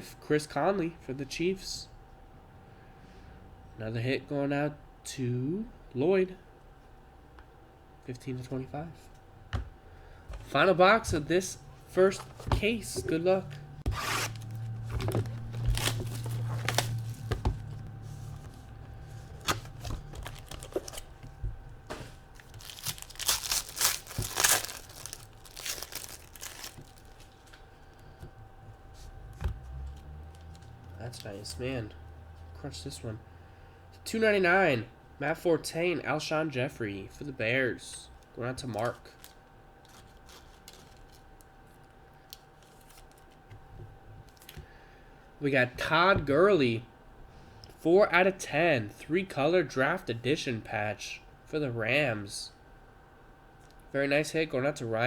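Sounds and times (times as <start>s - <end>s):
card packs torn and crinkled: 13.9s - 17.9s, 19.2s - 21.3s, 21.9s - 27.6s, 29.8s - 31.6s, 38.6s - 41.4s, 42.3s - 43.4s.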